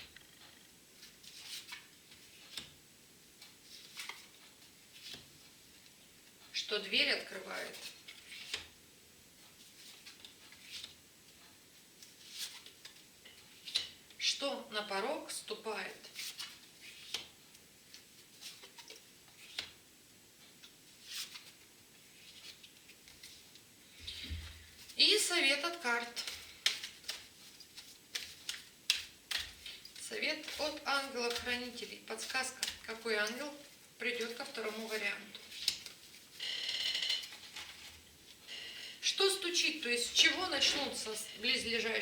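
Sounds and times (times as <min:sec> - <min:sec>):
cards clicking and swishing: 0:26.2 - 0:33.4.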